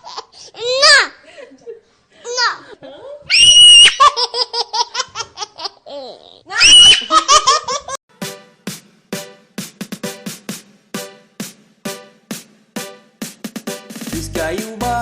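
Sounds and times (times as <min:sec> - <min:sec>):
young child laughing: 0:00.0 - 0:08.0
electronic music with steady beat: 0:08.1 - 0:15.0.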